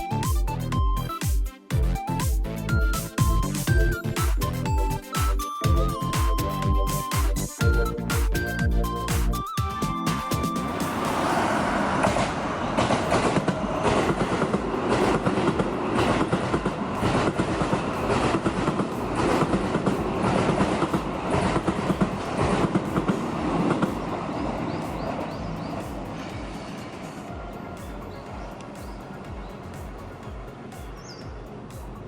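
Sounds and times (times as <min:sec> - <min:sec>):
electric train passing: 0:09.8 - 0:32.0
wheels clicking over rail joints: 0:10.6 - 0:32.0.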